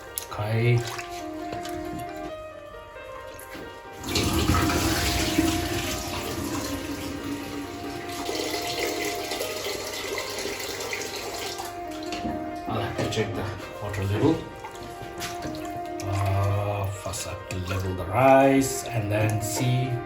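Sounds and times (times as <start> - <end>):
faint background music: 0.0 - 20.0
water pouring into pot: 3.7 - 12.3, 14.4 - 19.9.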